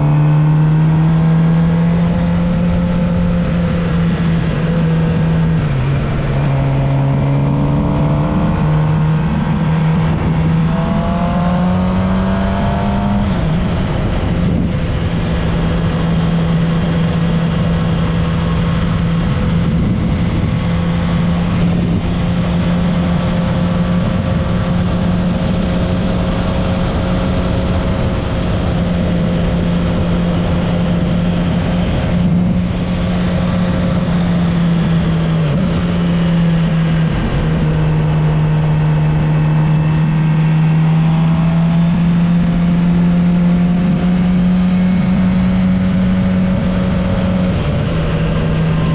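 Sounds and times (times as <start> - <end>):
motorcycle engine cruising: 0.0 - 48.9
wind rush: 0.0 - 48.9.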